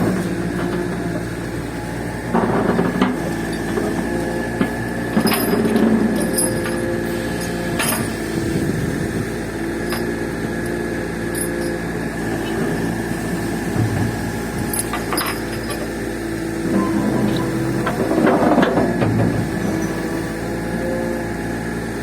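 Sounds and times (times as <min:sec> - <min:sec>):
diesel engine running: 0:00.0 - 0:22.0
sharp metallic knocks: 0:16.6 - 0:20.2.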